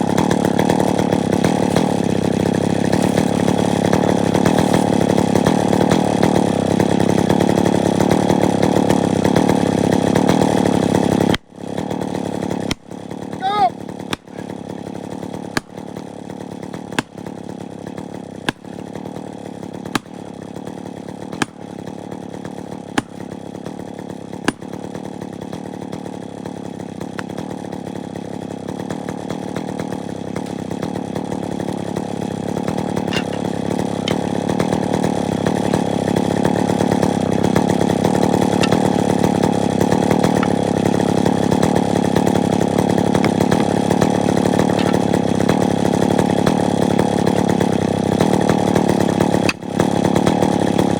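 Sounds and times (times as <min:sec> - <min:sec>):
chainsaw running: 0:00.0 - 0:50.9
hammer striking felling wedges: 0:00.1 - 0:05.9, 0:12.4 - 0:13.3, 0:14.0 - 0:14.8, 0:15.4 - 0:16.0, 0:16.6 - 0:17.5, 0:18.4 - 0:19.1, 0:19.8 - 0:20.4, 0:21.1 - 0:21.9, 0:22.7 - 0:23.4, 0:24.4 - 0:24.8, 0:32.6 - 0:45.7, 0:49.3 - 0:50.3.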